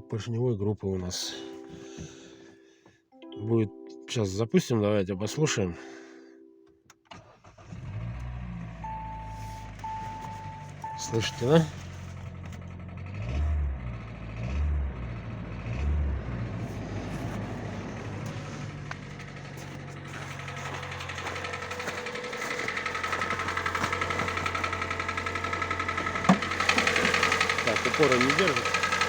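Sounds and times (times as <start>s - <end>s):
petrol engine running with knock: 9.4s - 13.9s, 16.6s - 29.0s.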